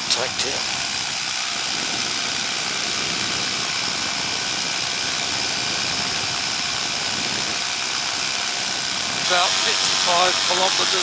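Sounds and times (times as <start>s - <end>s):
paramotor engine drone: 0.0s - 11.0s.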